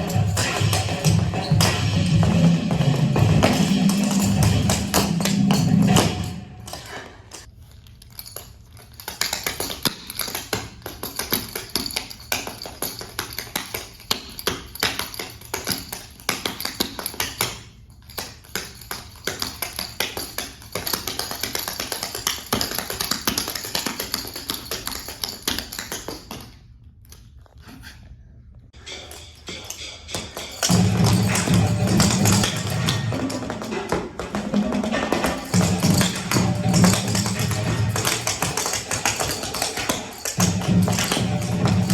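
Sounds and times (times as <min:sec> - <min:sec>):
dancers' shoes tapping on hard floor: 0:00.0 - 0:07.0, 0:30.1 - 0:41.9.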